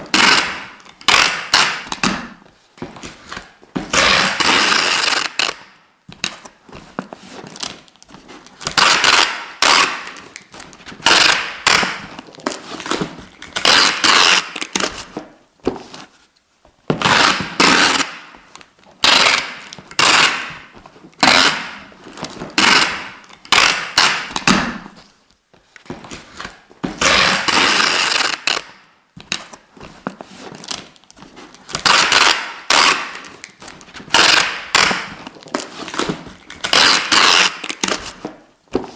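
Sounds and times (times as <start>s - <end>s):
adhesive tape ripping: 0.1s - 2.4s, 3.9s - 5.7s, 8.6s - 15.1s, 17.0s - 18.3s, 19.0s - 21.9s, 22.5s - 25.0s, 27.0s - 29.6s, 31.6s - 38.2s.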